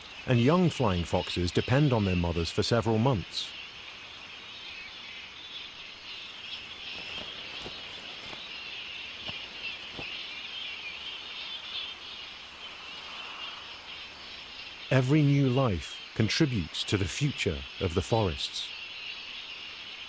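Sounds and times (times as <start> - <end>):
high-pitched insect chorus: 0.0 - 20.0
faint ticks: 6.1 - 14.8.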